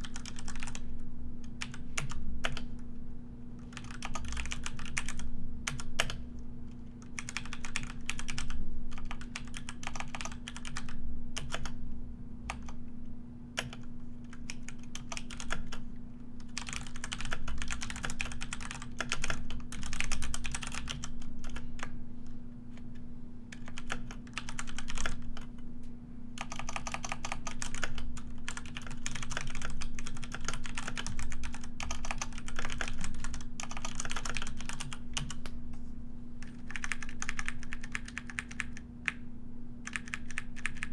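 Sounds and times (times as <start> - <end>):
computer keyboard typing: 0.0 - 0.8, 1.4 - 2.7, 3.6 - 6.2, 7.0 - 11.8, 13.6 - 15.8, 16.4 - 21.9, 23.5 - 25.6, 26.4 - 35.5, 36.4 - 39.2, 39.8 - 40.9
steady low hum: 0.0 - 40.9.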